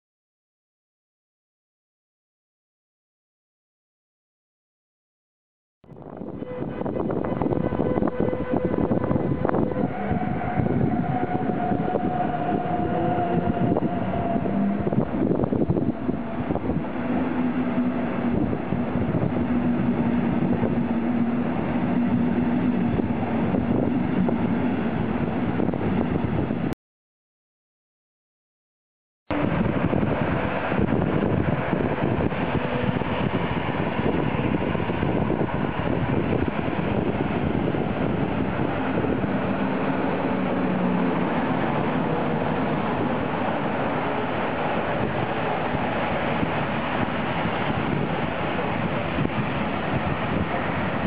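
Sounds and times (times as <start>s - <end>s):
train rumbling: 5.8s - 26.8s, 29.3s - 51.0s.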